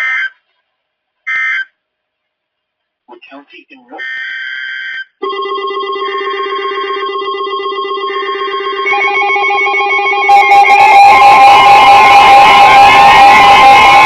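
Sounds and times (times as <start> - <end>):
pulsing alarm tones: 5.2 - 14.0.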